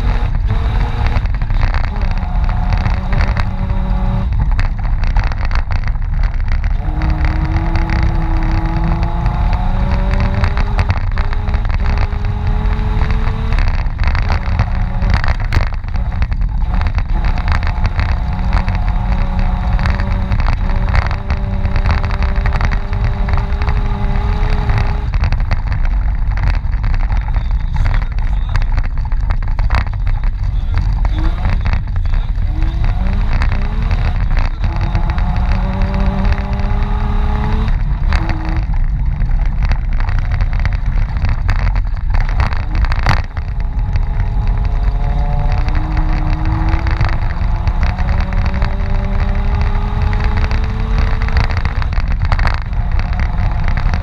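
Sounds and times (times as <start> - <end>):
rally car engine revving: 0.0 - 54.0.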